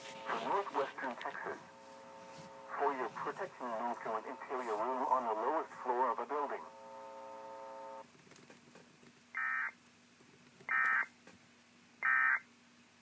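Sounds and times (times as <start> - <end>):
steady buzzy tone: 0.0 - 8.0
faint steady hum: 0.0 - 13.0.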